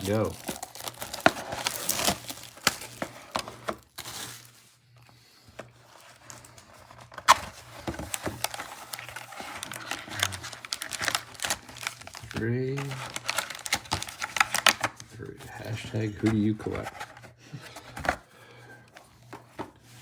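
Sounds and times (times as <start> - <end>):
card pack wrappers crinkling: 0.0 - 4.7, 5.9 - 17.2.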